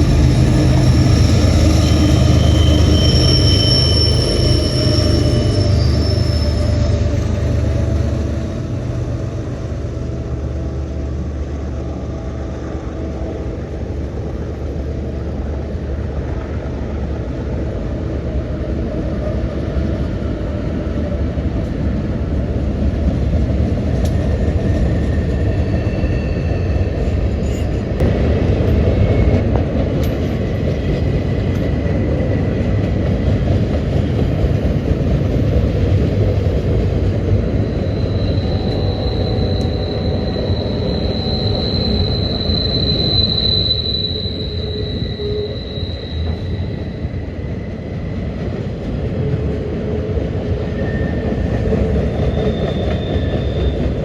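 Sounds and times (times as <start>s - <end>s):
freight train rumbling past: 0.0s - 54.0s
wheel squeal: 0.1s - 8.8s, 24.7s - 27.9s, 36.6s - 48.2s, 50.8s - 54.0s.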